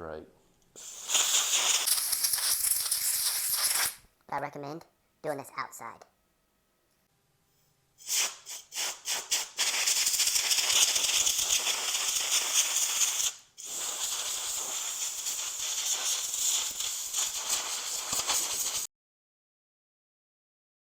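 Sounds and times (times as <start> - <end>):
compressed air blow gun blasts: 0.8 - 4.0, 8.0 - 18.9.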